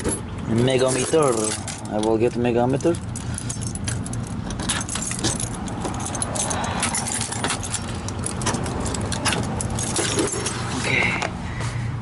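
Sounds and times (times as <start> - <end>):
metal tools clinking: 0.0 - 10.9.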